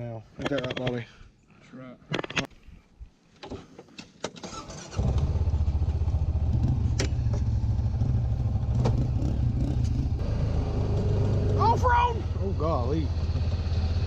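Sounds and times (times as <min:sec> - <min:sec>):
vehicle engine starting and rumbling: 0:04.4 - 0:14.0.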